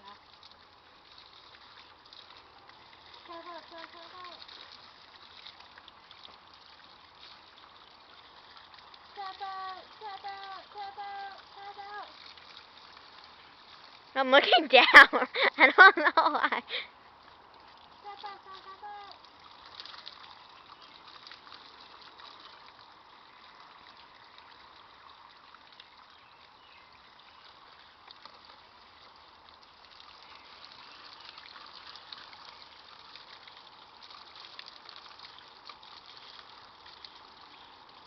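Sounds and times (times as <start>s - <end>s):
garden hose spraying: 0.0s - 38.0s.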